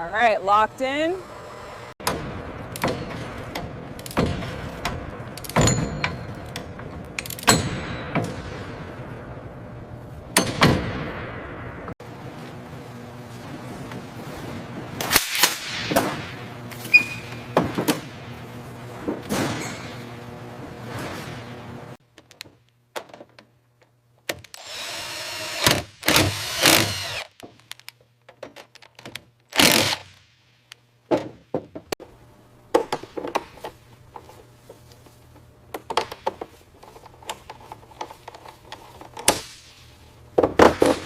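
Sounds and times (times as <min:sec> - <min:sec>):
power tool whirring: 0:00.6 - 0:02.0, 0:24.5 - 0:27.4.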